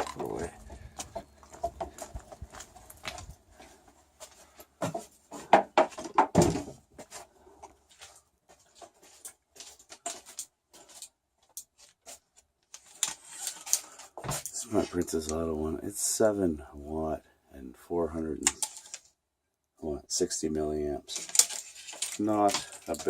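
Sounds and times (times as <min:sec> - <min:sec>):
loud knocks and thumps: 0:04.9 - 0:06.8
rustling: 0:21.1 - 0:23.0.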